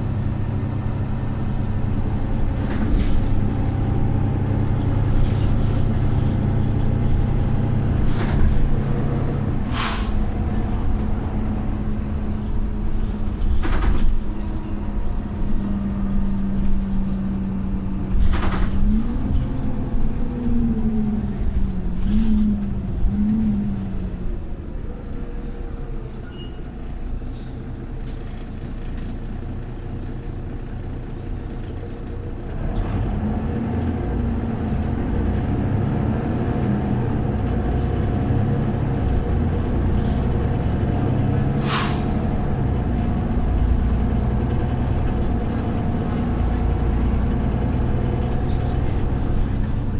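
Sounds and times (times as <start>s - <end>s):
bus engine running: 0.0s - 49.9s
air brake hisses: 9.6s - 10.3s, 27.0s - 27.8s, 41.6s - 42.3s.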